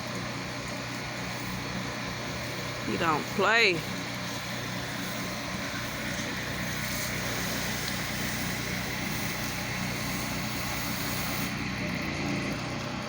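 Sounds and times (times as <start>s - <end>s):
pressure washer motor drone: 0.0s - 13.0s
spray hissing: 2.4s - 11.8s.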